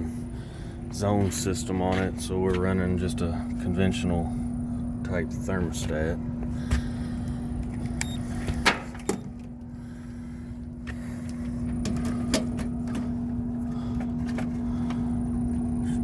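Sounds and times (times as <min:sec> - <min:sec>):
low machine hum: 0:00.0 - 0:16.0
rumbling background: 0:00.0 - 0:16.0.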